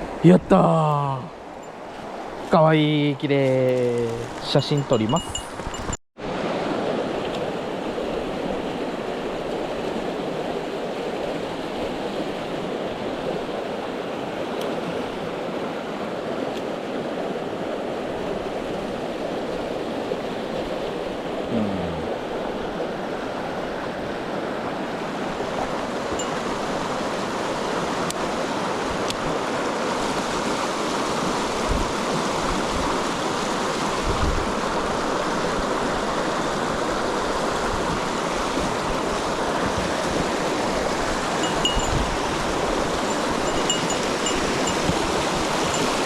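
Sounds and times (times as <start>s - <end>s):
water rushing over rocks: 24.8s - 46.0s.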